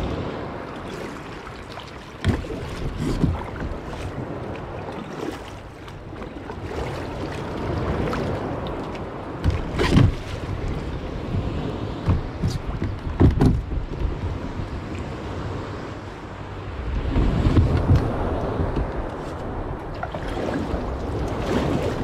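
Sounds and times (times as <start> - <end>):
wind rushing over microphone: 0.0 - 1.4, 6.0 - 22.0
water washing against kayak hull: 0.0 - 15.3, 16.8 - 22.0.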